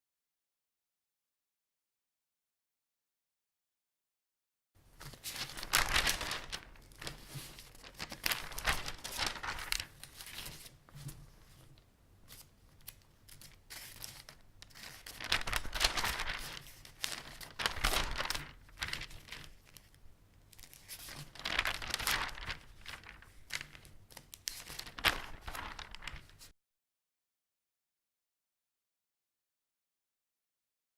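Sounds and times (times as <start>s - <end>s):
newspaper pages rustling: 4.9s - 26.5s.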